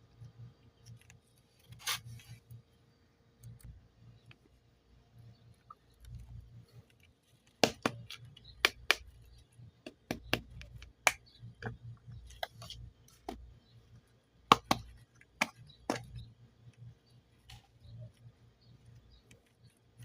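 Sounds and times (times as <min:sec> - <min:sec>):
scissors snipping clay: 0:07.5 - 0:09.2.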